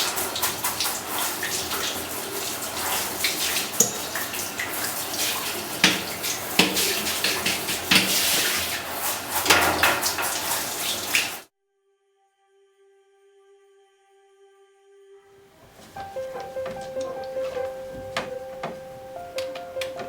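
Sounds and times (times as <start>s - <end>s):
tap water splashing on plastic: 0.0s - 11.5s, 15.6s - 20.0s
plastic knocks: 15.6s - 20.0s.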